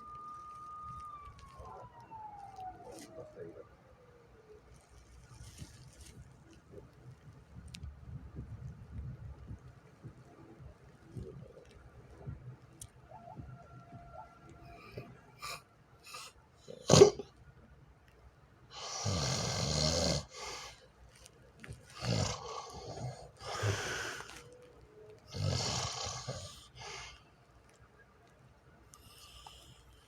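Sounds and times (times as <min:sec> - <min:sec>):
person snoring: 0:18.8 - 0:20.6, 0:21.9 - 0:24.3, 0:25.3 - 0:26.6.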